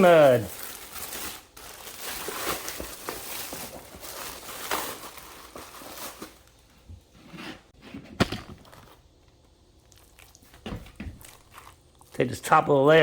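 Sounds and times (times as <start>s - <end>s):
box scraping and bag rustling: 7.1s - 9.0s.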